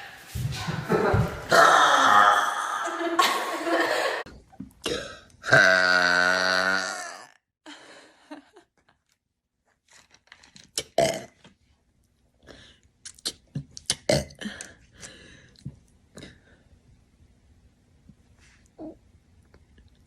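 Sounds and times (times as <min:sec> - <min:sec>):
woman burping: 0:01.5 - 0:03.0, 0:04.8 - 0:07.4.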